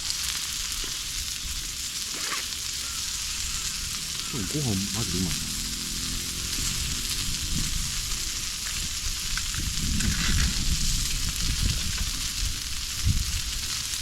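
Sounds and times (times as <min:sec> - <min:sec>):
meat sizzling on a grill: 0:00.0 - 0:14.0
low rumbling bumps: 0:05.3 - 0:13.2.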